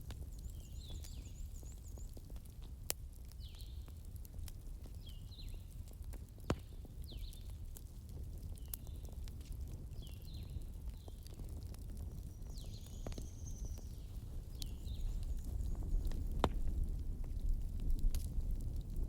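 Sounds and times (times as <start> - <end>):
wood fire crackling: 0.0 - 19.0.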